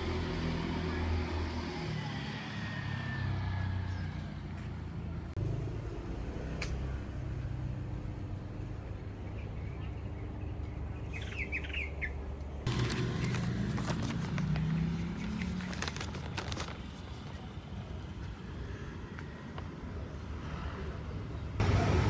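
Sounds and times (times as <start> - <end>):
bird chirps: 9.4 - 12.2.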